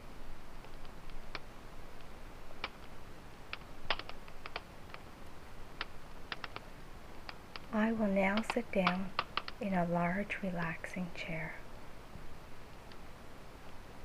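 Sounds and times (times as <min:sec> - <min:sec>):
low steady hiss: 0:00.0 - 0:14.0
wood fire crackling and popping: 0:00.4 - 0:09.6.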